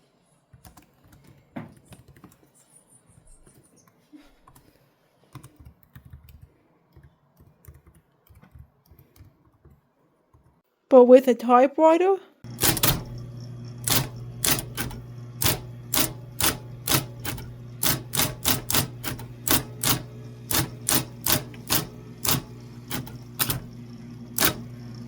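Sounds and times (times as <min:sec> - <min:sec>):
steady low hum: 0:12.4 - 0:25.0
typewriter key strikes: 0:12.5 - 0:23.8, 0:24.4 - 0:24.7.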